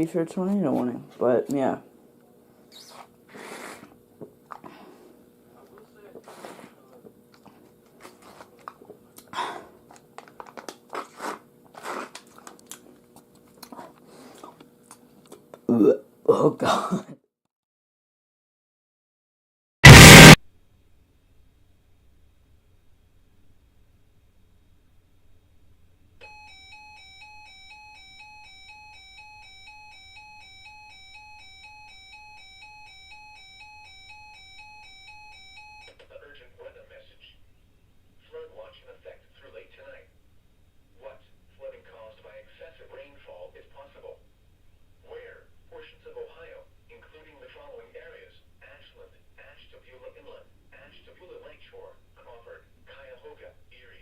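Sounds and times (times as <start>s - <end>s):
two-pitch alert beeping: 19.8s - 20.4s.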